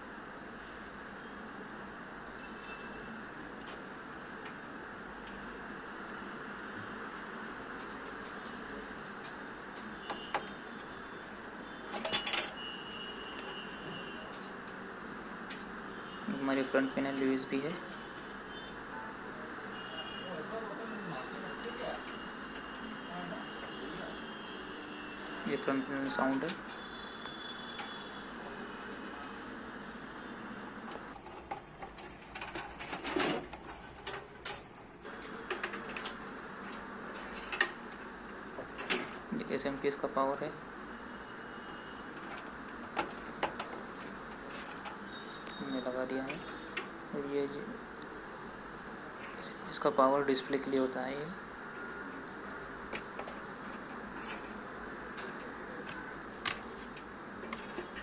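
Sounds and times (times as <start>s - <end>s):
cables clicking and rustling: 3.4s - 5.4s, 7.6s - 12.6s, 15.4s - 17.7s, 25.0s - 30.1s, 30.8s - 40.0s, 42.0s - 47.0s, 52.1s - 58.0s.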